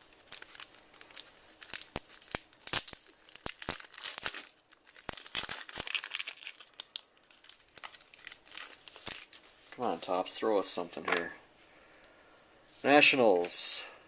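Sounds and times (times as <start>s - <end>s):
wrapper tearing and crinkling: 0.0s - 9.8s.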